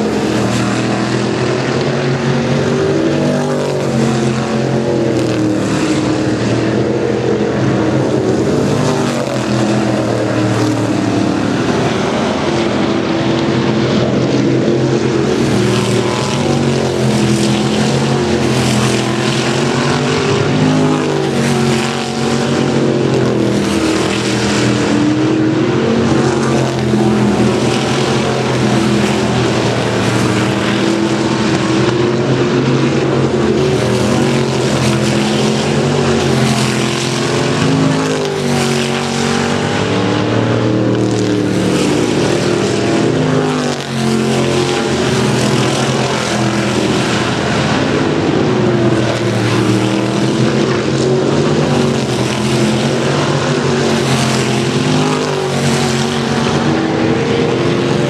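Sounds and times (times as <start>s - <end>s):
race car engines: 0.0s - 58.0s.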